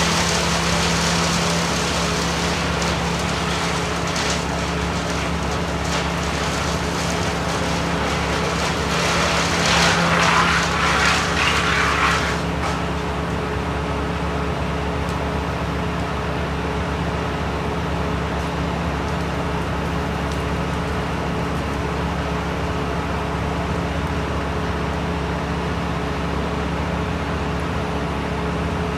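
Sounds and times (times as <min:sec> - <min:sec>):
rushing crackling noise: 0:00.0 - 0:13.8
engine running: 0:00.0 - 0:23.7.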